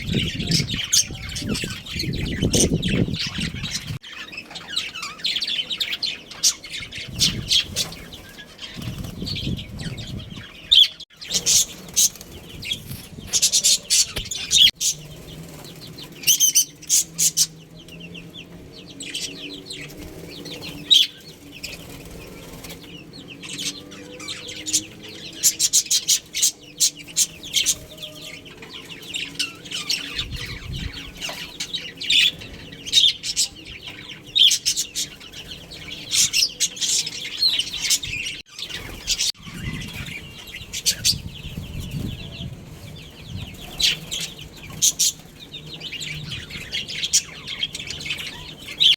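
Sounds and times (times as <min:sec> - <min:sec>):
budgerigars chirping and chattering: 0:00.0 - 0:48.9
low wing fluttering: 0:08.8 - 0:10.4.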